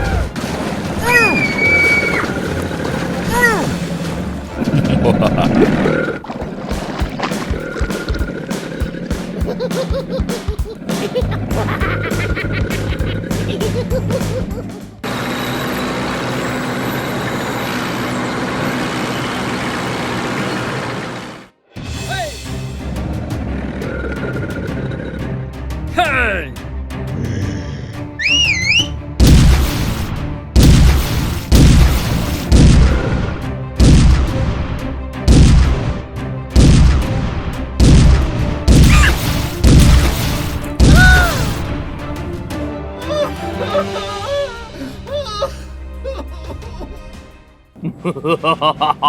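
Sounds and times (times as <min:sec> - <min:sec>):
truck engine and road noise: 0:00.0 - 0:09.8, 0:10.5 - 0:21.6, 0:22.5 - 0:46.3
background music: 0:00.0 - 0:15.1, 0:21.6 - 0:49.0
rising and falling whistling tone: 0:01.3 - 0:02.3, 0:28.2 - 0:29.0
heavy booming thuds: 0:29.2 - 0:42.2.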